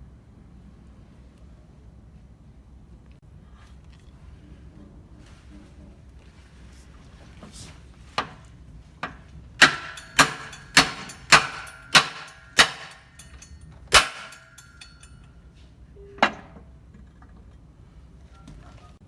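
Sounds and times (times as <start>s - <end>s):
hammer striking metal: 9.0s - 15.3s.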